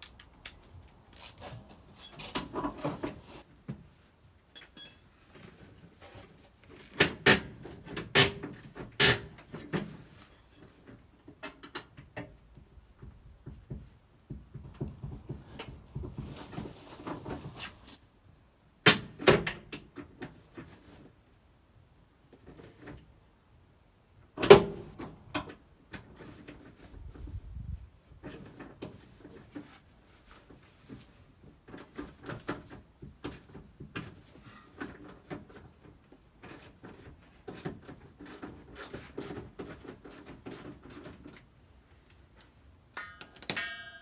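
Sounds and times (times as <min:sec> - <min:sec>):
hand tools clattering and scraping: 0:00.0 - 0:03.4, 0:14.6 - 0:18.0.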